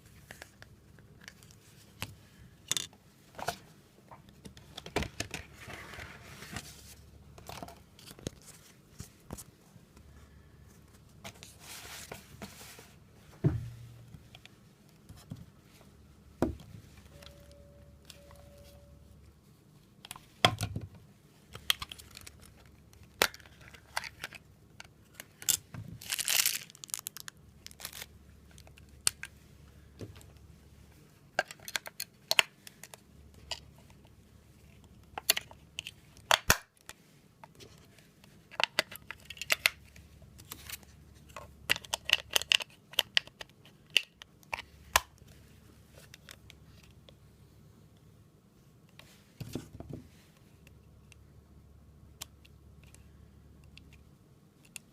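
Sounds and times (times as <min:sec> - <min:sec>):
crinkling rustle: 0:25.2 - 0:29.2.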